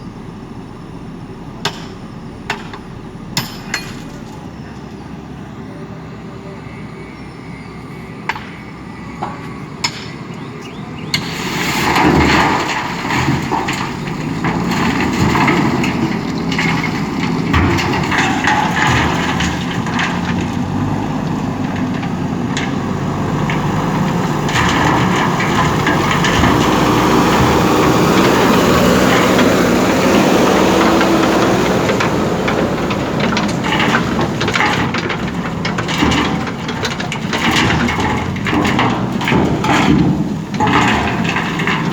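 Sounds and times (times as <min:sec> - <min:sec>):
diesel engine working hard: 0:00.0 - 0:41.9
knocks and clatter: 0:01.6 - 0:04.6, 0:11.1 - 0:41.9.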